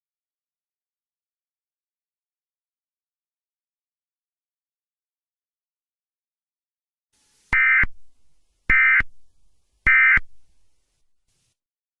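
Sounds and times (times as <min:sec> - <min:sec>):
buzzing digital data tones: 0:07.5 - 0:08.0.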